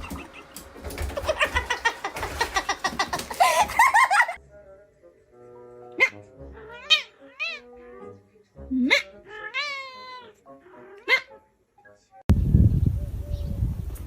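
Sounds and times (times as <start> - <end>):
busy clattering noise: 0.0 - 4.0
giggling laughter: 0.0 - 4.4
soft background music: 4.3 - 12.3.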